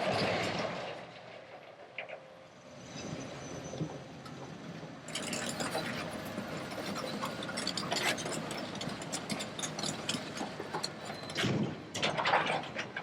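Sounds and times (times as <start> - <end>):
debris clanking and crunching: 5.1 - 13.0.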